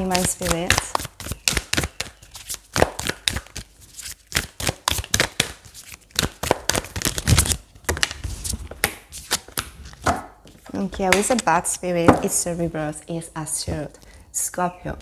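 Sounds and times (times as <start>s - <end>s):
cards being shuffled: 0.0s - 11.5s.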